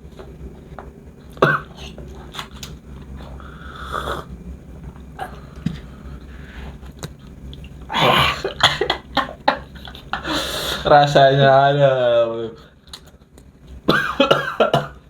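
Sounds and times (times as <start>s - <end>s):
person coughing: 1.4s - 2.0s, 7.9s - 10.4s, 13.9s - 15.0s.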